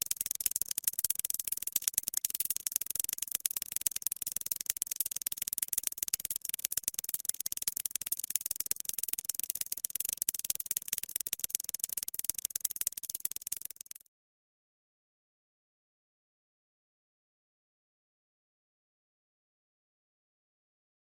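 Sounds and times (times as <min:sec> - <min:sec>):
ants crackling and scratching: 0:00.0 - 0:14.0.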